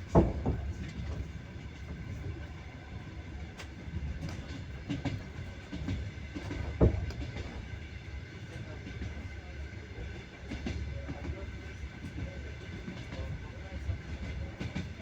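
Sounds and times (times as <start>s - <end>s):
wheels clacking over rail joints: 0.0s - 2.4s, 3.5s - 7.8s
train wheels rumbling on rails: 0.0s - 15.0s.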